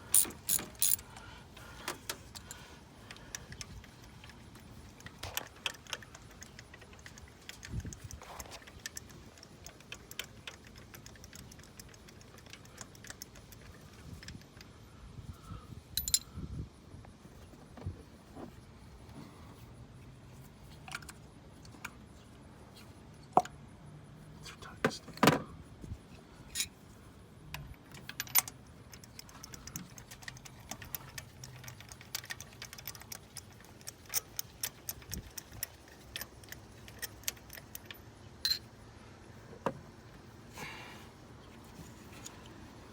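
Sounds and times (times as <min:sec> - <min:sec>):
tools clinking on metal: 0:00.0 - 0:01.1, 0:16.0 - 0:16.3, 0:26.5 - 0:26.7, 0:30.3 - 0:38.7.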